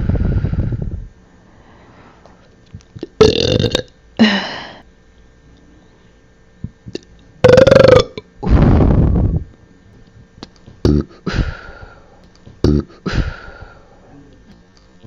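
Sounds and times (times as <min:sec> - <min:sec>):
breathy blowing: 0:00.0 - 0:02.4, 0:08.4 - 0:09.5, 0:10.9 - 0:14.0
person burping: 0:03.0 - 0:04.5, 0:06.9 - 0:08.3, 0:10.9 - 0:11.3, 0:12.6 - 0:13.1.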